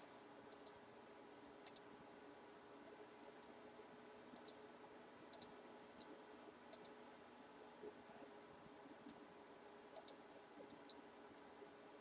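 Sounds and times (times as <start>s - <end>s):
computer mouse clicks: 0.5s - 0.8s, 1.6s - 1.9s, 4.3s - 4.6s, 5.3s - 7.0s, 9.9s - 11.5s.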